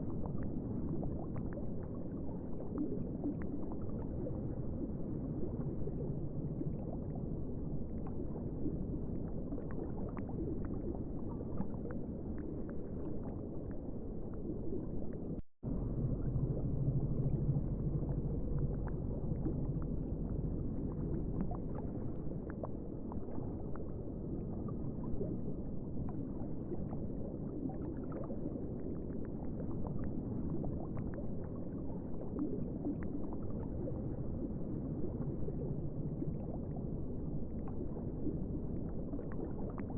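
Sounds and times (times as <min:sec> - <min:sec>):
water bubbling and gurgling: 0:00.0 - 0:39.9
low hum: 0:12.0 - 0:27.6, 0:32.7 - 0:39.9.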